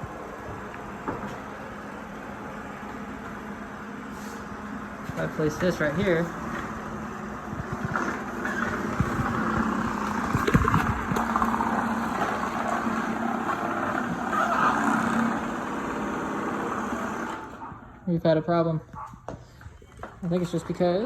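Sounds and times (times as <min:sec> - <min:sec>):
robot vacuum motor whir: 0:04.5 - 0:17.7.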